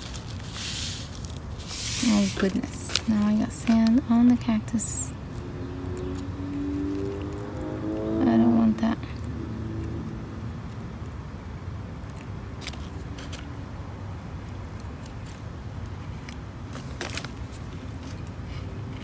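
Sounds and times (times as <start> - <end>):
sand clicks and scrapes: 0.0 - 4.0.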